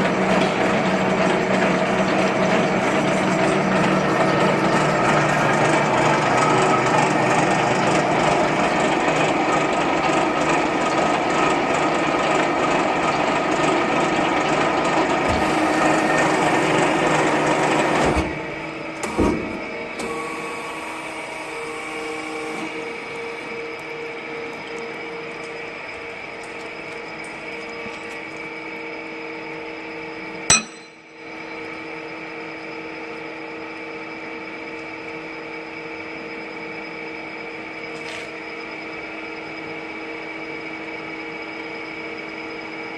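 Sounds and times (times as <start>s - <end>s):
machine humming: 14.6s - 33.4s
milling machine grinding steel: 14.7s - 18.7s.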